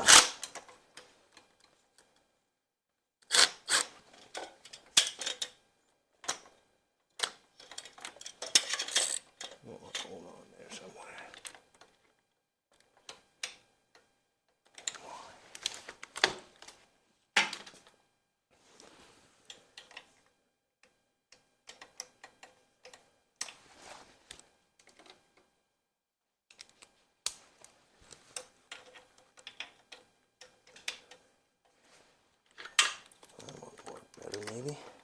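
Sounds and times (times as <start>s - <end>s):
metal hand tools clicking and scraping: 0.0s - 0.5s, 3.3s - 3.9s, 8.4s - 9.3s.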